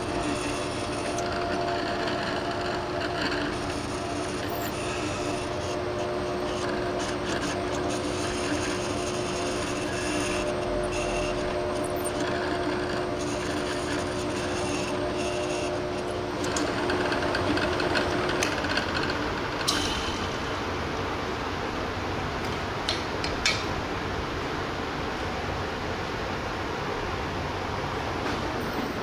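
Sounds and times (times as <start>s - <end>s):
motor hum: 0.0s - 29.0s.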